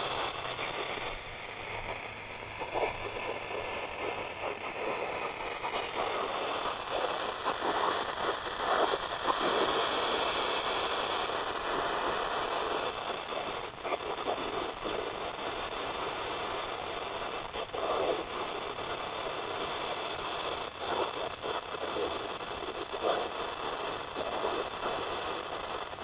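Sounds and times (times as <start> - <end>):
speaker hiss with crackles: 0.0 - 26.0.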